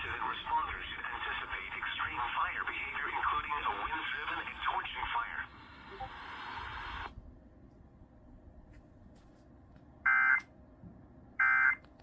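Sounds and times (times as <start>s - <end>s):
broadcast hiss: 0.0s - 7.2s.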